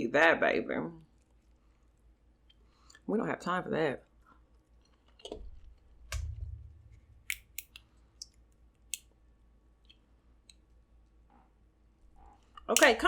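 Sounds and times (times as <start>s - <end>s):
dull thump: 6.1s - 7.3s
crab shell cracking: 7.2s - 7.9s.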